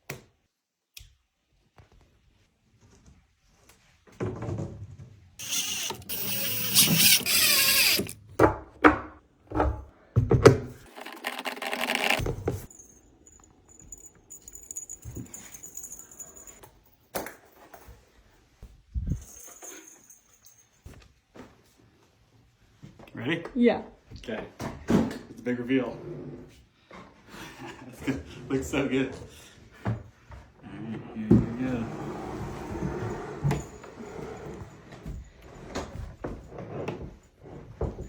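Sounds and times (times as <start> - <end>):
power tool whirring: 5.4 - 8.2, 10.9 - 12.3.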